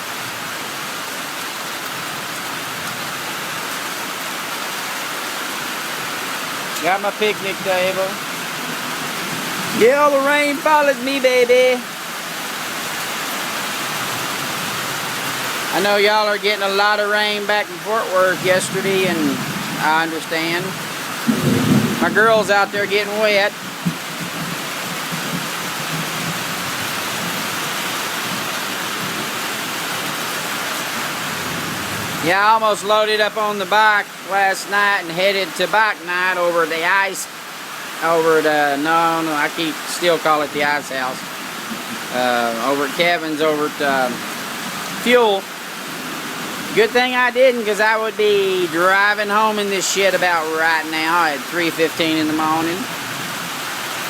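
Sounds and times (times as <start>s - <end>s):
heavy rain pouring: 0.0s - 54.0s.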